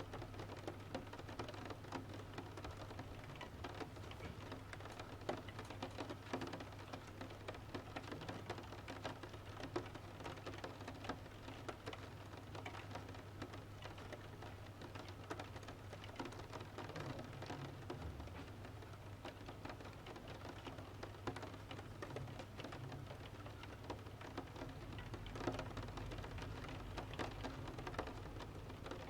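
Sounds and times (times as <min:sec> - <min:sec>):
rain falling: 0:00.0 - 0:29.0.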